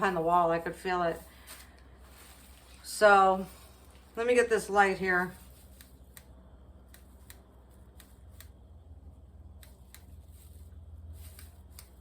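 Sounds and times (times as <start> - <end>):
light rustling: 0.0 - 4.3
steady low hum: 0.0 - 12.0.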